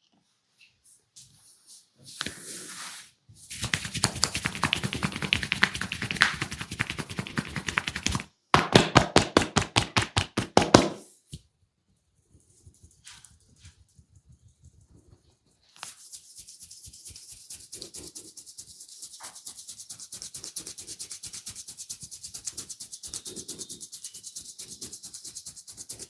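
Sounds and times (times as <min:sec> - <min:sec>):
hands tapping and chopping: 0:03.5 - 0:11.1
soft rustles: 0:12.2 - 0:16.1.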